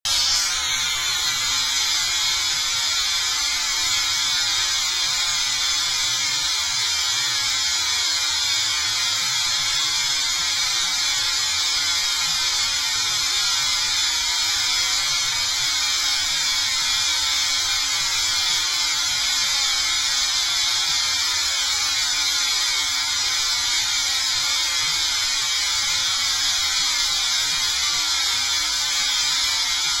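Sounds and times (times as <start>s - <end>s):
high-pitched static hiss: 0.1s - 6.0s.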